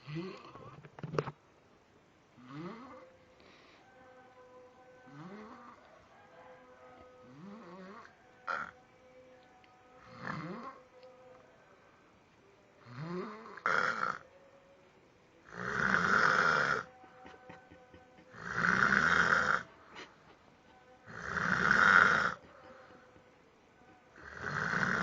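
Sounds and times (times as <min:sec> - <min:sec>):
heavy snoring: 0:00.0 - 0:00.8, 0:02.4 - 0:03.1, 0:05.1 - 0:05.8, 0:07.2 - 0:08.8, 0:10.0 - 0:10.8, 0:12.8 - 0:14.2, 0:15.4 - 0:17.0, 0:18.3 - 0:19.7, 0:21.0 - 0:23.1, 0:24.2 - 0:25.0.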